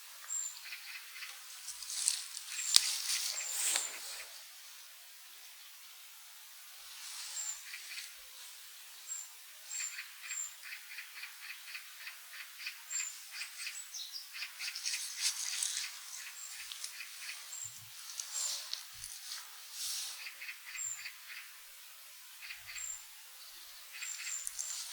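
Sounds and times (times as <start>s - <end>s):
short ticking bird calls: 9.1s - 18.9s, 23.8s - 24.9s.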